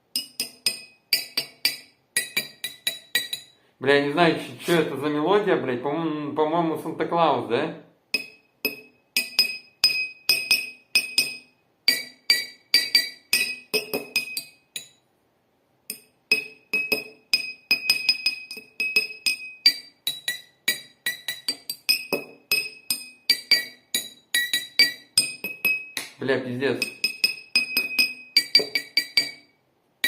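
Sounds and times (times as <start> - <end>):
glasses struck ringing melody: 0.1 - 3.6, 8.2 - 15.0, 15.9 - 26.2, 26.8 - 29.6.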